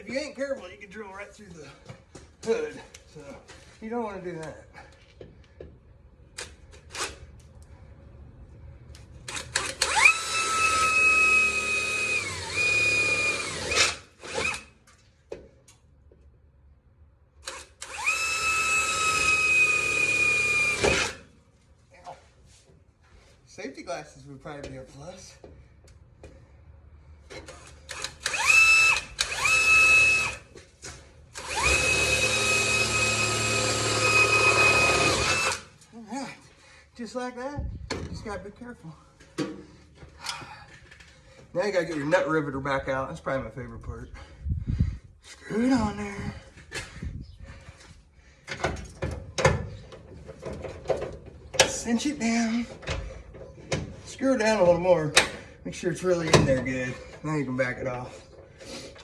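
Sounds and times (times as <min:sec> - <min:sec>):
electric drill boring sheet metal: 0:09.3 - 0:14.7, 0:17.5 - 0:21.2, 0:27.9 - 0:30.4, 0:31.3 - 0:35.7.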